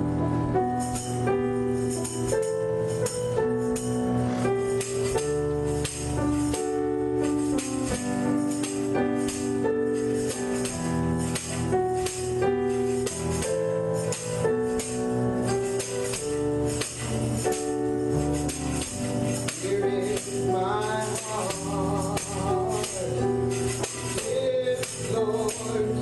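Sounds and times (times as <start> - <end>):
instrumental church music: 0.0 - 26.0
percussion quick beat: 0.6 - 26.0.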